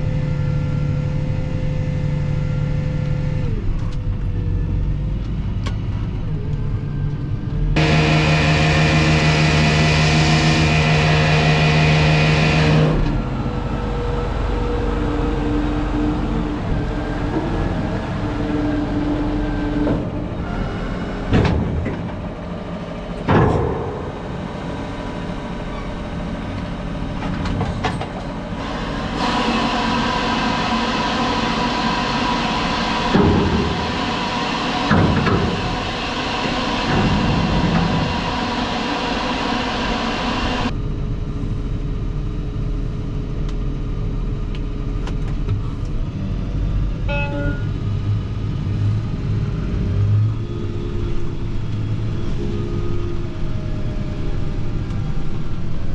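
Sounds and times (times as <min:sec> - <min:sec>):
tractor running: 0:00.0 - 0:46.8
hiss: 0:28.6 - 0:40.7.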